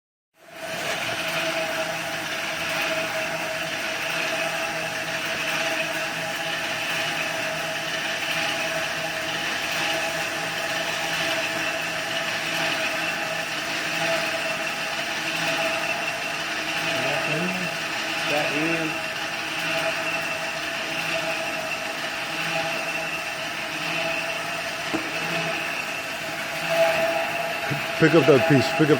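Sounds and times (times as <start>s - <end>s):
machine hissing with a whine: 0.4s - 28.9s.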